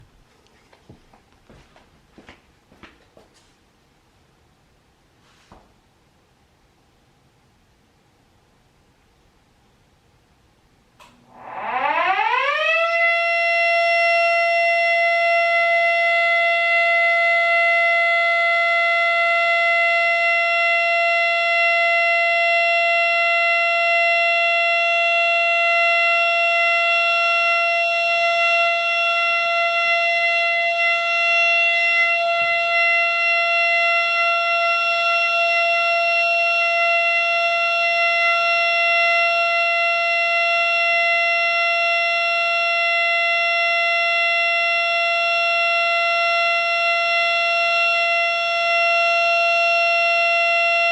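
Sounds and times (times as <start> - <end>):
siren steady alert tone: 11.0 - 50.9.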